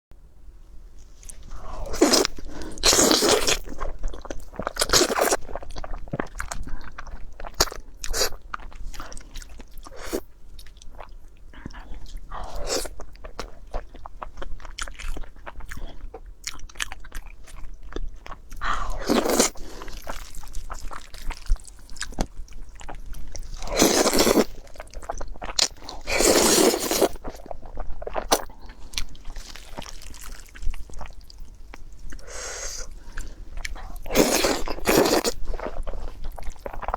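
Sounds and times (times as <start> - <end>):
crunchy bites and chewing: 1.3 - 36.9.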